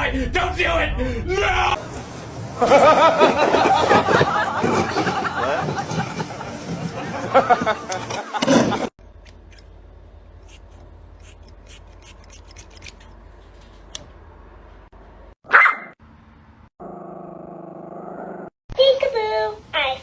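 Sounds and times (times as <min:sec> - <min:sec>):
dog barking: 0:15.5 - 0:16.0.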